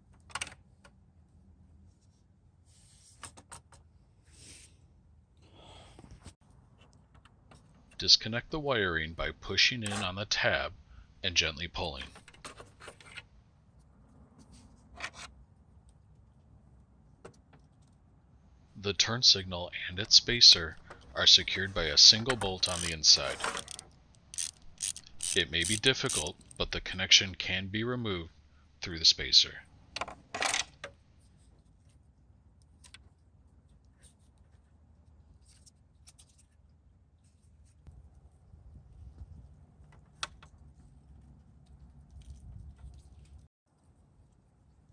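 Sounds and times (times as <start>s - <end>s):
plastic parts clicking: 22.2s - 26.6s.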